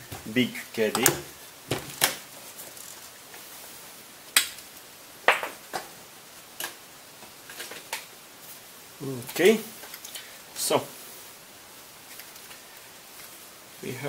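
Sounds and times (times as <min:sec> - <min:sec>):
room hiss: 0:00.0 - 0:14.0
sharp clicks and knocks: 0:00.9 - 0:02.2.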